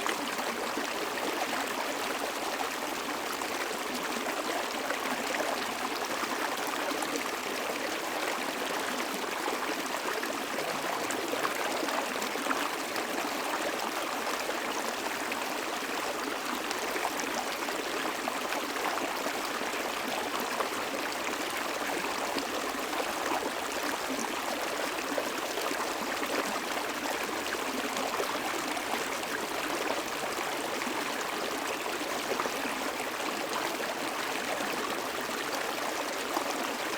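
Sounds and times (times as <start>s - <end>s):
small stream flowing: 0.0s - 36.9s.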